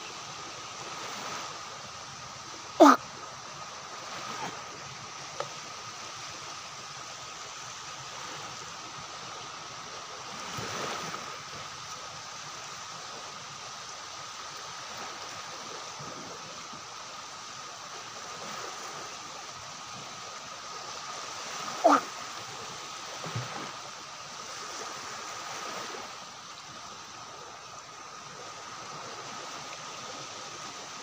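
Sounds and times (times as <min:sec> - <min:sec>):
rushing water: 0:00.0 - 0:31.0.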